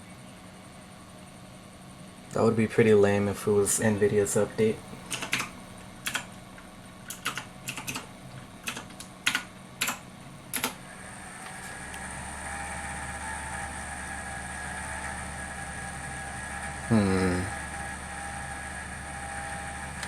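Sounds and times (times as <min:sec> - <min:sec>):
machine hum with whine: 0:00.0 - 0:20.0
typing on computer keyboard: 0:05.1 - 0:06.3, 0:07.1 - 0:10.8.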